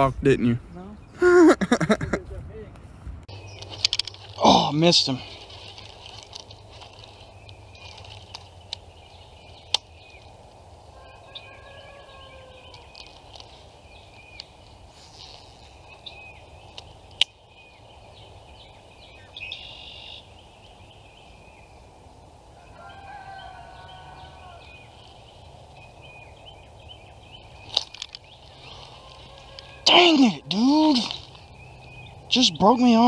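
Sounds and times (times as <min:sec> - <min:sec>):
birds chirping: 0:00.0 - 0:33.0
faint falling bird call: 0:01.1 - 0:02.2.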